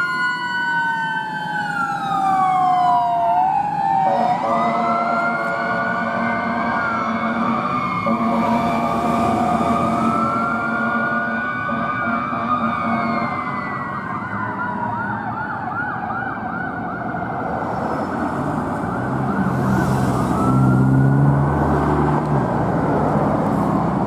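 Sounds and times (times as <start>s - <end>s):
electronic siren yelping: 0.0s - 17.2s
falling siren tone: 0.0s - 22.4s
deep air horn blasts: 4.1s - 13.5s.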